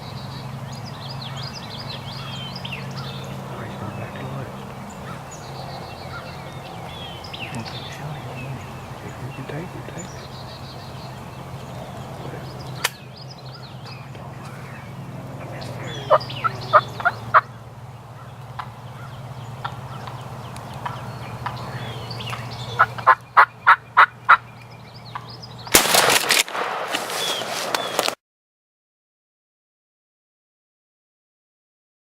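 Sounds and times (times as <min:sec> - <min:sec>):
turkey gobbling: 0:06.0 - 0:11.2, 0:15.4 - 0:17.6, 0:20.8 - 0:24.5.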